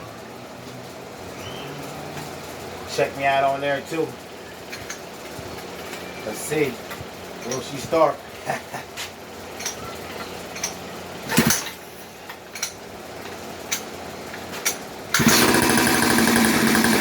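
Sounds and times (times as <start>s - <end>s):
two-stroke engine running: 12.6s - 17.0s.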